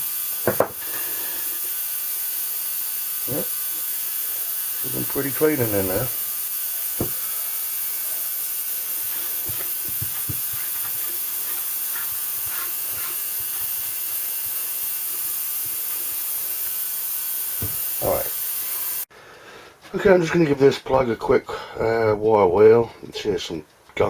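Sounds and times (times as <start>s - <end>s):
steady hiss: 0.0s - 19.1s
faint clicks and taps: 8.6s - 13.8s.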